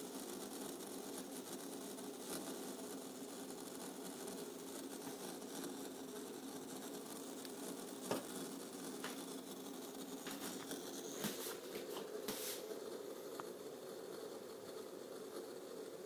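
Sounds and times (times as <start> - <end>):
water pump humming: 4.5 - 16.0.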